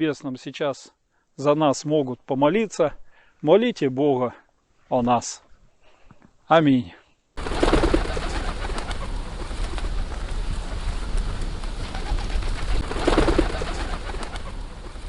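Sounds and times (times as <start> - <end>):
background hiss: 0.0 - 15.0
pigeons cooing: 7.4 - 10.3, 11.8 - 15.0.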